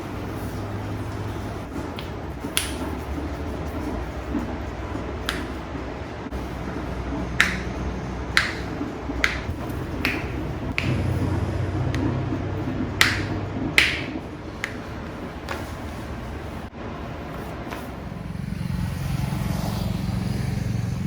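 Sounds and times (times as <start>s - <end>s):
low steady hum: 0.0s - 21.0s
sharp finger snaps: 2.0s - 3.0s, 5.3s - 5.6s, 7.4s - 7.8s, 8.4s - 11.1s, 13.0s - 14.8s.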